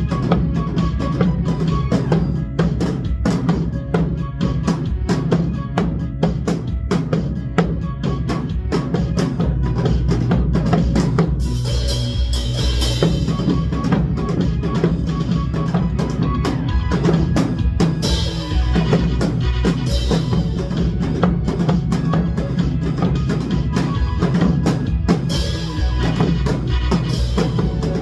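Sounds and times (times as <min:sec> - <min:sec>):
trot music with drum beat: 0:00.0 - 0:28.0
hourglass drums: 0:09.4 - 0:28.0.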